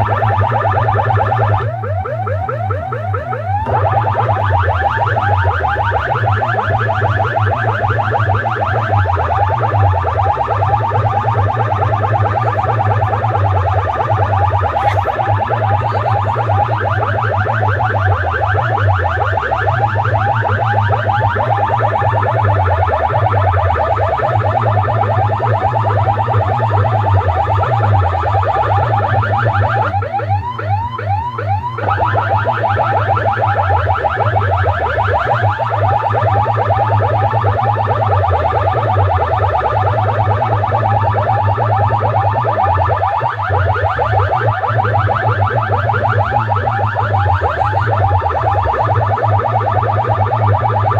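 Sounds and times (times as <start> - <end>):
heavy bass: 0.0 - 50.9
siren-like warbling electronic track: 0.0 - 50.9.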